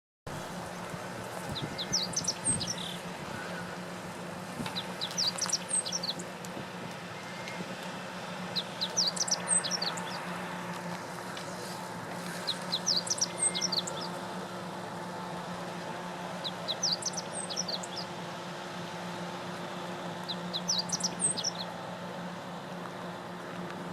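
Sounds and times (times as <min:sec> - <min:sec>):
steady low hum: 0:00.3 - 0:23.9
bird singing: 0:01.5 - 0:03.8, 0:04.7 - 0:06.3, 0:08.5 - 0:10.3, 0:12.4 - 0:14.2, 0:16.4 - 0:18.1, 0:20.3 - 0:21.8.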